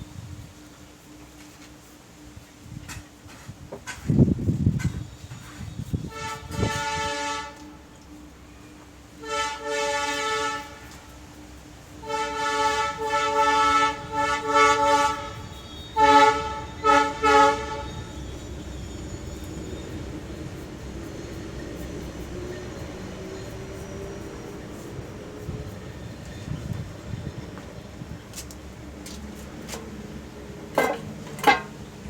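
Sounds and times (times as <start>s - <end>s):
horn blasts: 6.0s - 7.9s, 9.2s - 11.1s, 12.0s - 18.4s.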